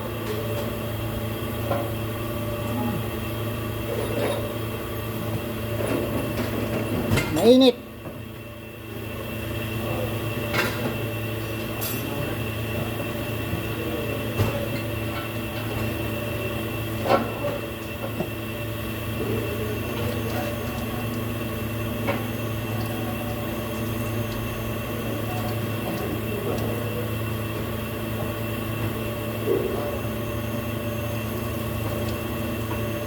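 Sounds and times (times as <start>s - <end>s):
mechanical hum: 0.0s - 33.0s.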